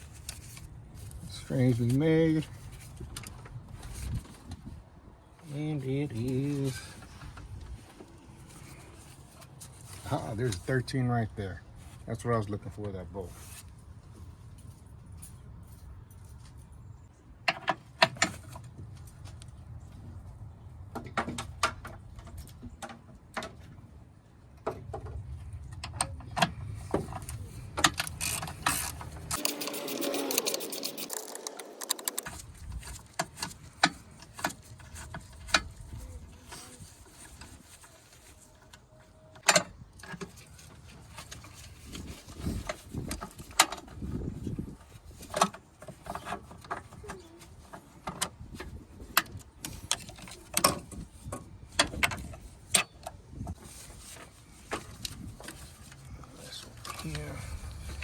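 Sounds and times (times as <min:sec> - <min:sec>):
tool and metal parts clattering: 0:27.0 - 0:35.7.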